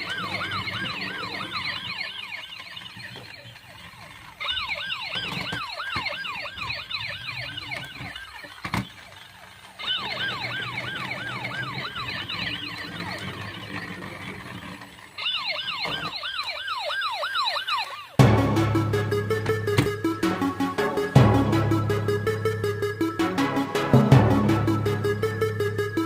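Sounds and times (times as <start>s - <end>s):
toy siren yelping: 0.0s - 18.2s
music: 18.2s - 26.0s.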